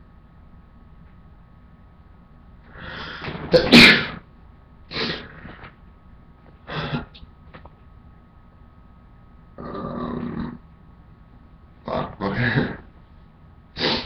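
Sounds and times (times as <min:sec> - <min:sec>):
man sneezing: 0:03.3 - 0:04.2, 0:13.8 - 0:14.0.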